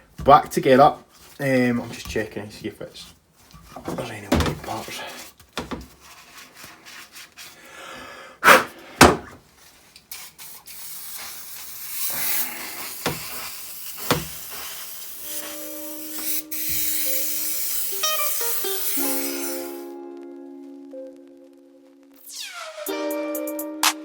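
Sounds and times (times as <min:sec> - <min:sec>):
low hiss: 0:09.9 - 0:22.2
music: 0:15.2 - 0:24.0.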